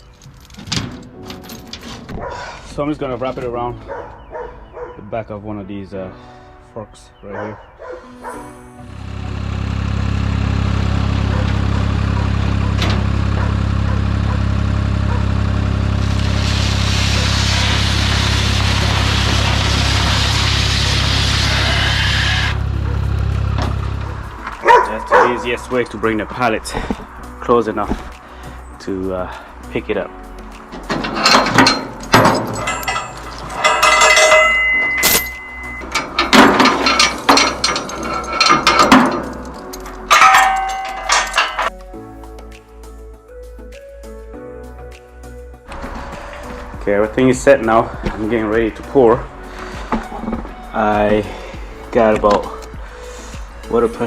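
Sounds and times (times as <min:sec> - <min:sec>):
metal clanks and rattles: 0:00.0 - 0:04.1, 0:09.7 - 0:14.4, 0:22.6 - 0:28.2, 0:30.4 - 0:41.8, 0:45.7 - 0:50.9
skid steer engine running: 0:08.8 - 0:24.7
hiss: 0:16.1 - 0:22.6
high squeal: 0:16.2 - 0:22.8.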